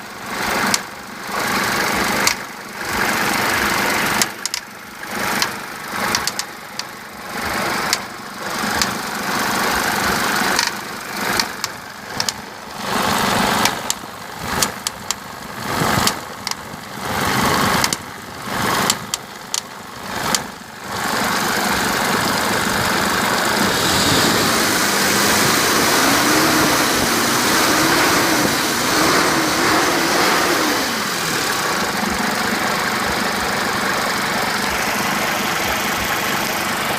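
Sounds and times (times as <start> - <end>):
diesel engine running: 0.0 - 36.9
engine ticking and clunking: 0.0 - 36.9.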